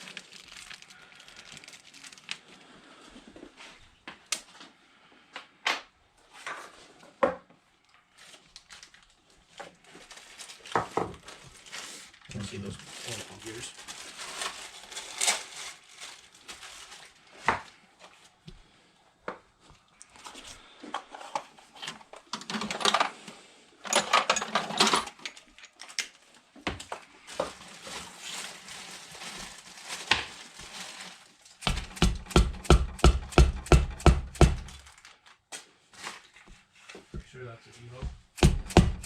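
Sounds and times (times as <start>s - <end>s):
metal tools clinking: 23.9s - 25.9s
heavy knocks: 31.6s - 34.8s, 38.1s - 39.0s.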